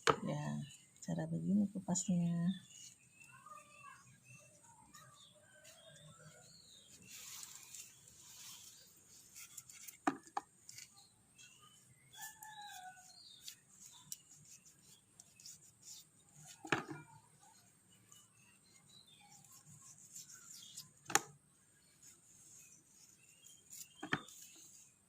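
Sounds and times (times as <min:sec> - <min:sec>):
knife scraping and cutting: 0:07.0 - 0:11.6, 0:22.5 - 0:24.9.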